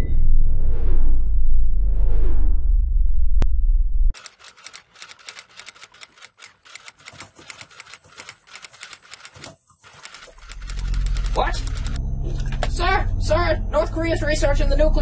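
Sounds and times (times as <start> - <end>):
deep rumble: 0.0 - 4.2, 10.8 - 15.0
keyboard typing: 4.2 - 12.0.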